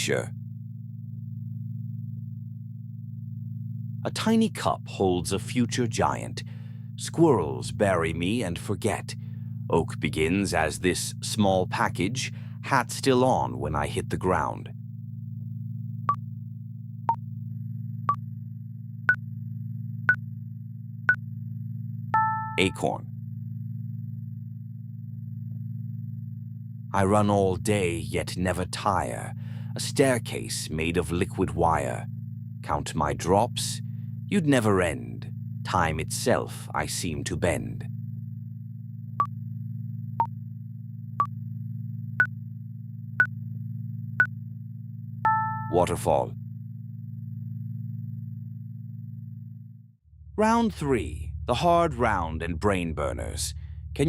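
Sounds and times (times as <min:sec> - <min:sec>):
low synthesized drone: 0:00.0 - 0:29.9, 0:37.3 - 0:54.0
short electronic beeps: 0:22.2 - 0:22.8, 0:45.3 - 0:45.9.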